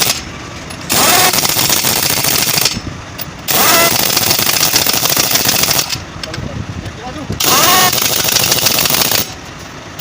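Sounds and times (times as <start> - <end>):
pneumatic impact wrench hammering: 0.0 - 0.3, 0.9 - 6.0, 7.4 - 9.4.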